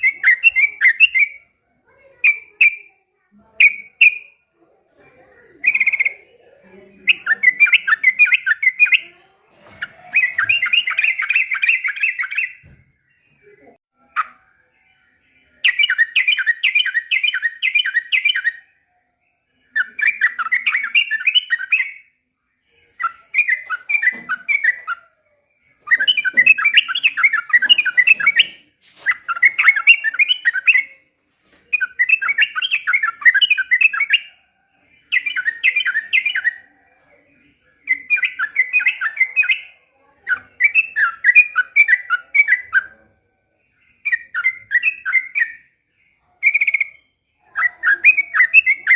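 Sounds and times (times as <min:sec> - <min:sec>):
bird singing bubbling notes: 0:00.0 - 0:01.4.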